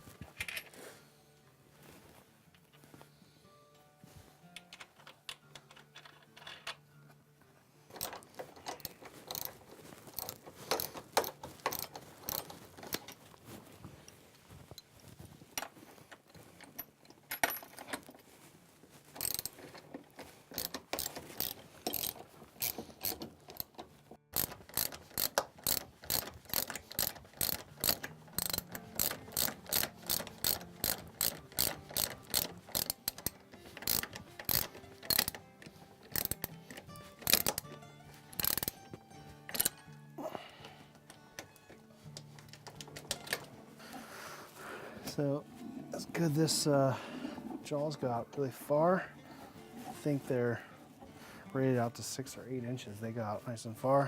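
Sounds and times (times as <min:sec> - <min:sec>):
ratchet wrench clicking: 0:08.0 - 0:13.1, 0:19.2 - 0:19.6, 0:20.5 - 0:35.4, 0:36.1 - 0:38.8, 0:39.5 - 0:39.8.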